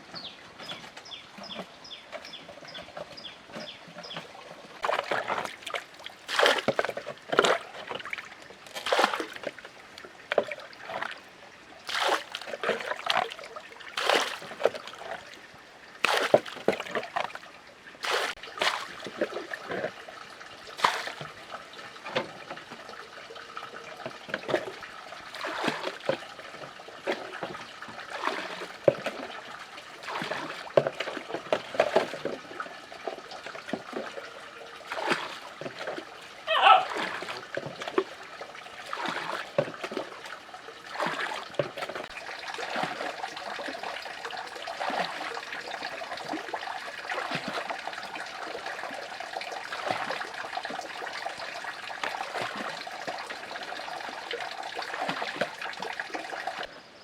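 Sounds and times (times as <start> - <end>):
water splashing and trickling: 0.0 - 57.0.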